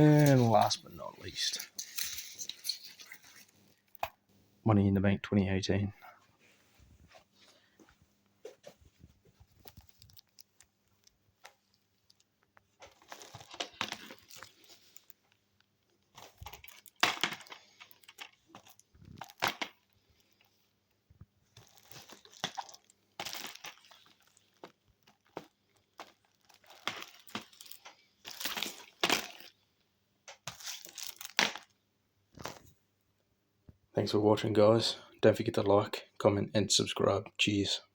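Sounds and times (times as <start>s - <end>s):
packaging rustling and tearing: 0.0s - 3.9s, 9.6s - 11.1s, 12.8s - 15.2s, 16.1s - 20.5s, 21.5s - 29.6s, 30.4s - 31.7s.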